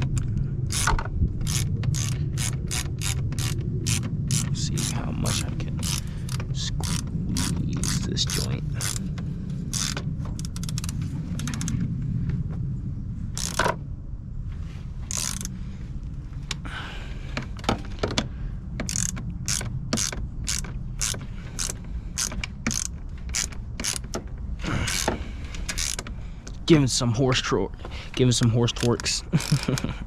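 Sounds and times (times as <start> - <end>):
ratchet wrench clicking: 0.0 - 9.1, 9.7 - 11.8, 13.4 - 13.7, 15.1 - 15.5, 18.8 - 24.2, 24.9 - 26.1, 28.8 - 29.9.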